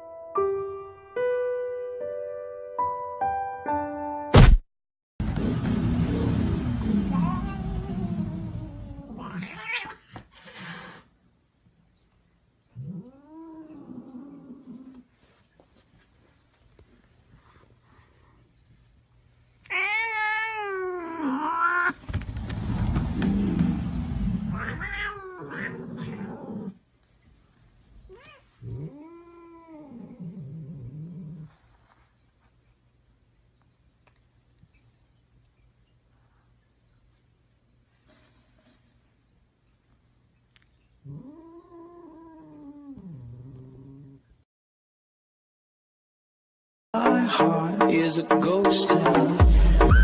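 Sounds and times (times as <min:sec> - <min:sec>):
cat yowling: 0:07.1 - 0:10.1, 0:19.7 - 0:22.0, 0:24.5 - 0:26.6.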